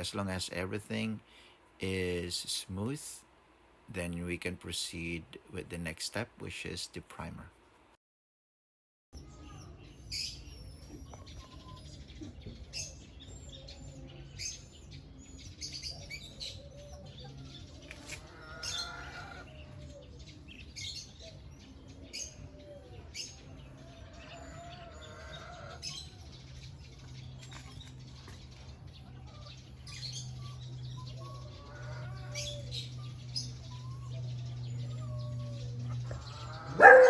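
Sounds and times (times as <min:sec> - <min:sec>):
small birds chirping: 0:09.2 - 0:37.0
steady low hum: 0:25.8 - 0:37.0.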